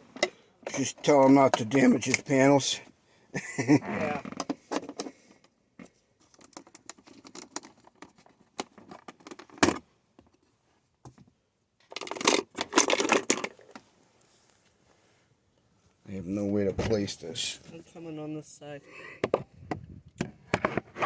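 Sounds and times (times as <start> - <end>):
plastic clicks and rattles: 4.2 - 10.4, 11.8 - 13.8
plastic trim clicks and scraping: 19.2 - 21.0.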